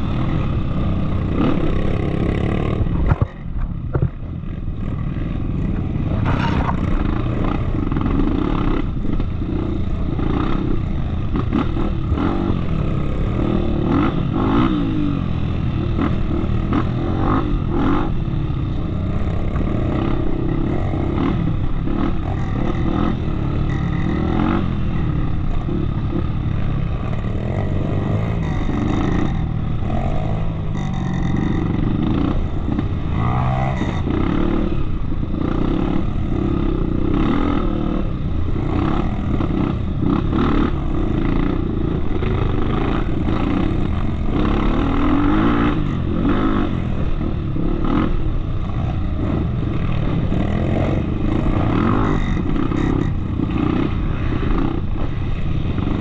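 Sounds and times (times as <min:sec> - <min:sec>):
motorcycle engine revving: 0:00.0 - 0:56.0
knocks and clatter: 0:02.8 - 0:04.2.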